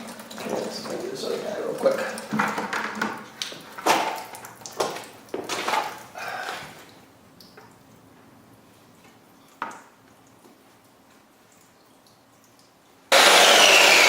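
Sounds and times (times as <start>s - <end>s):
hard objects knocking and clattering: 2.2s - 6.1s.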